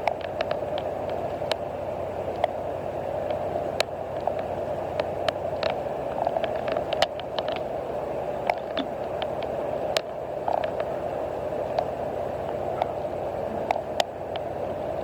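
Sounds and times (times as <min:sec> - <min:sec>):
boat hum: 0:00.0 - 0:15.0
water noise: 0:00.0 - 0:15.0
small clicks and knocks: 0:03.2 - 0:07.7.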